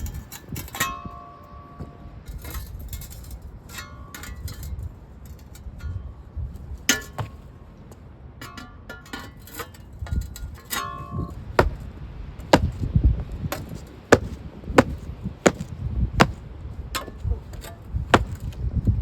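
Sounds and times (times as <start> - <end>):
sharp knocks on pavers: 11.6 - 16.4, 17.0 - 18.6.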